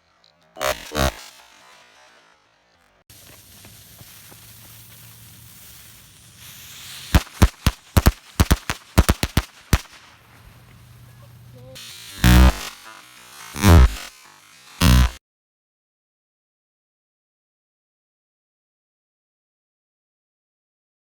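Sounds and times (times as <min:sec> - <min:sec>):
firecrackers banging: 0:03.1 - 0:15.2.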